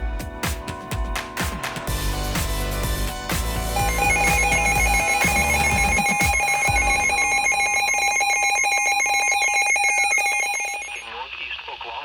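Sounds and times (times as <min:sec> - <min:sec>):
background music: 0:00.0 - 0:08.6
buzzy electronic data tones: 0:01.9 - 0:12.0.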